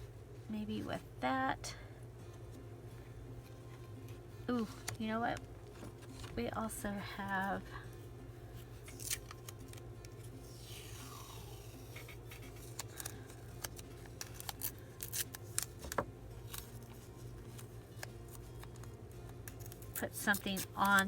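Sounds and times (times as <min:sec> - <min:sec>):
scissors snipping paper: 0:08.8 - 0:21.0
paper rustling: 0:11.8 - 0:21.0.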